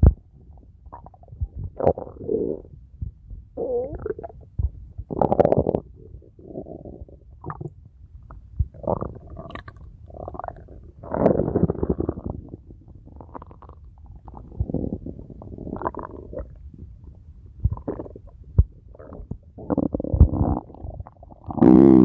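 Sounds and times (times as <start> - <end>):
bowel gurgles through stethoscope: 8.8 - 12.6, 13.2 - 16.6.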